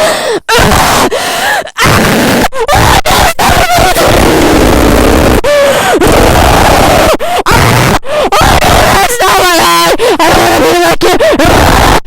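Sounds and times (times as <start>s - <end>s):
person yelling and screaming: 1.8s - 5.3s, 6.0s - 12.0s.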